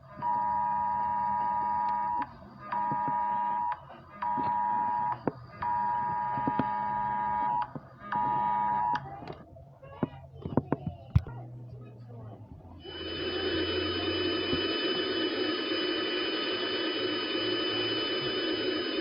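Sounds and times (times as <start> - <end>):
steady electronic alert beep: 12.8 - 19.0.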